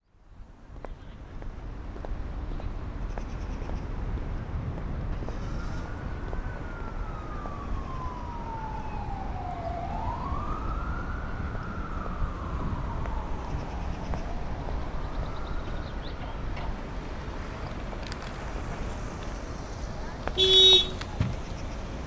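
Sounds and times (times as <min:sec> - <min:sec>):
siren wailing: 0:05.4 - 0:15.9, 0:20.4 - 0:21.8.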